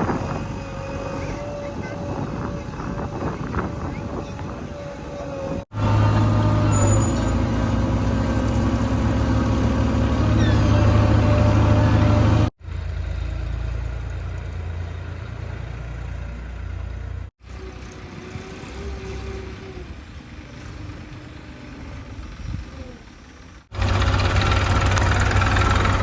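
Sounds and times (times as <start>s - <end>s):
diesel engine running hard: 0.0s - 21.1s, 23.3s - 26.0s.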